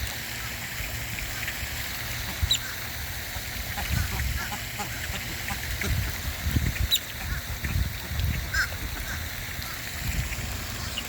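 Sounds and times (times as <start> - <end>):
birds calling: 8.4 - 11.0.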